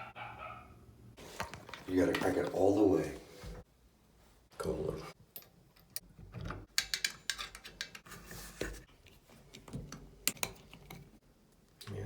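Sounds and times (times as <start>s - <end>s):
hard objects clicking and clinking: 6.7s - 8.0s.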